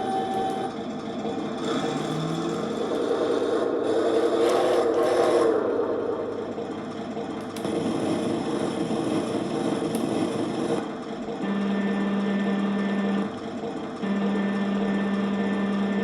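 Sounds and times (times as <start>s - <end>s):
electric motors whirring: 0.0s - 0.8s, 1.4s - 3.6s, 14.0s - 16.0s.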